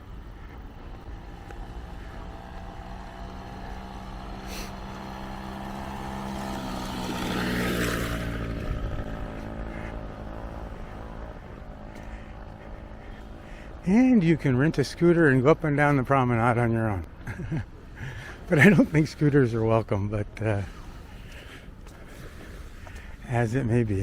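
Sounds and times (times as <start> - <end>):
vehicle engine passing by: 0.0 - 15.6.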